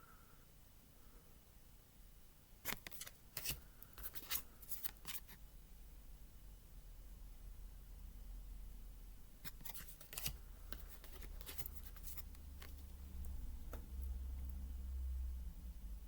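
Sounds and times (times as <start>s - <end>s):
cards clicking and rustling: 2.7s - 5.4s, 9.5s - 12.9s
steady low hum: 5.4s - 16.0s.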